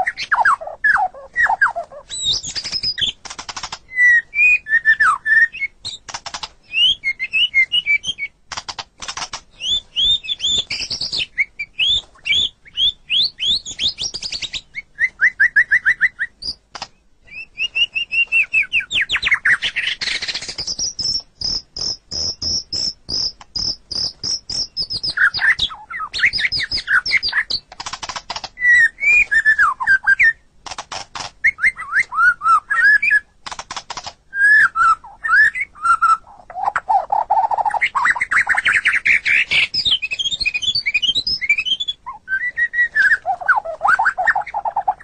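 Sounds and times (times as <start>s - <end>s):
bird singing varied song: 0.0s - 30.5s, 31.2s - 45.0s.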